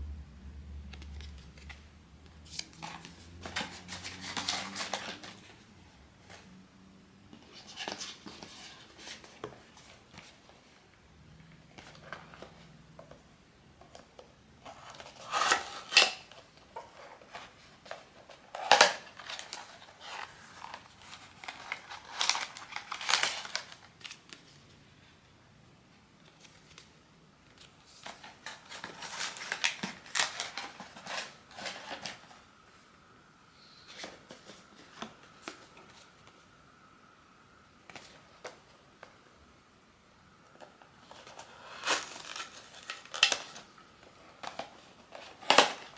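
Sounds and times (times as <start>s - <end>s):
packaging crinkling and clicking: 18.5s - 24.4s, 28.0s - 32.2s
faint steady tone: 32.3s - 41.4s.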